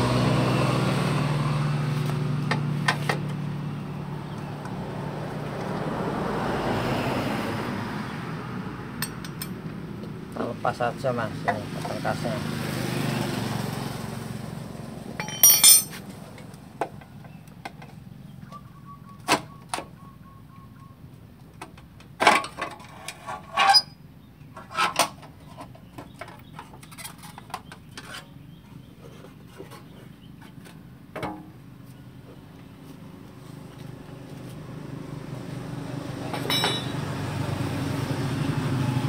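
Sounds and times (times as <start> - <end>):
metal parts clinking: 15.2 - 16.0, 36.4 - 36.9
short metal rattle: 15.2 - 16.0.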